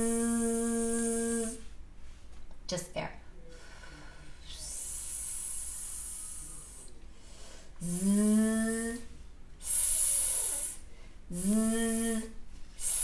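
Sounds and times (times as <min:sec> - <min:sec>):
woman hissing sss: 0:04.4 - 0:06.9, 0:09.6 - 0:13.0
woman buzzing zzz: 0:09.6 - 0:13.0.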